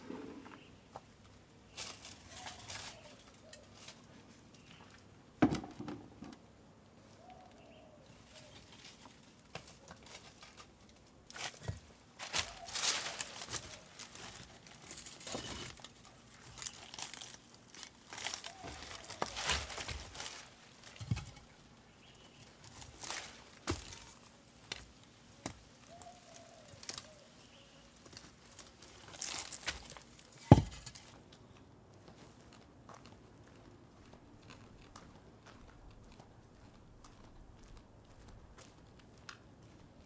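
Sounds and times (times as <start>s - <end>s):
rustling and crinkling handling: 0.0s - 5.1s, 7.0s - 40.0s.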